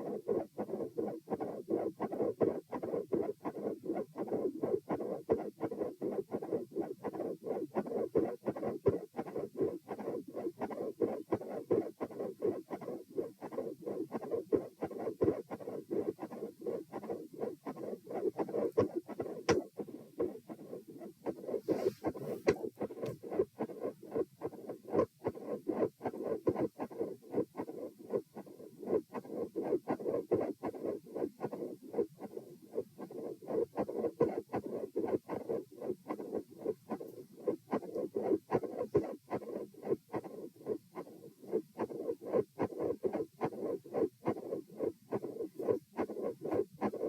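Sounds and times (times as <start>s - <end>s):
heartbeat through stethoscope: 0.0s - 47.0s.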